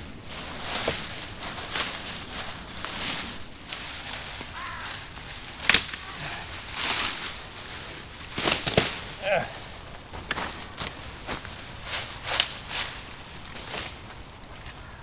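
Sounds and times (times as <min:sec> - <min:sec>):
leafy branches rustling: 0:00.0 - 0:15.0
stick cracking: 0:05.6 - 0:06.1, 0:08.3 - 0:11.5, 0:12.3 - 0:12.7.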